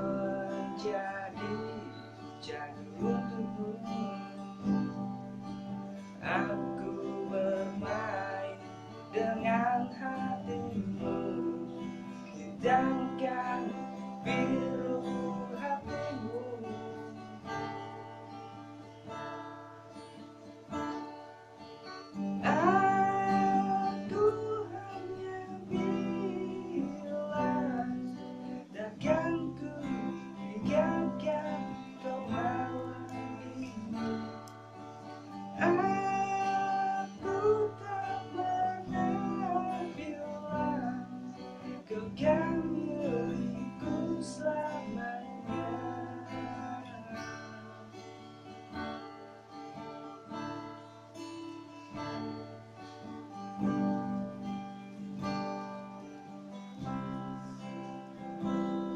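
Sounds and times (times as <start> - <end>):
person singing: 0.0 - 18.1, 22.3 - 48.0
acoustic guitar strumming: 0.0 - 58.9.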